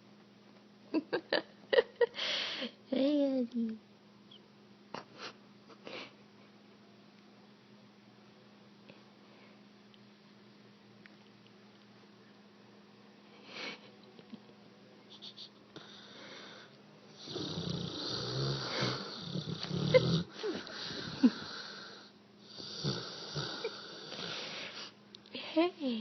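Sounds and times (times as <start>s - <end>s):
dog snoring: 15.8s - 24.9s.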